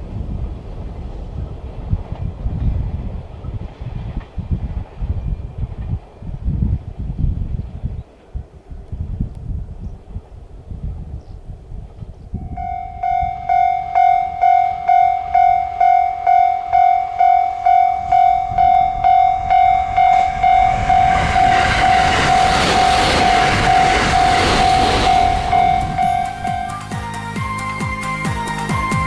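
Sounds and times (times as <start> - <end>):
train rumble: 0.0 - 29.0
level crossing warning bell: 12.4 - 27.0.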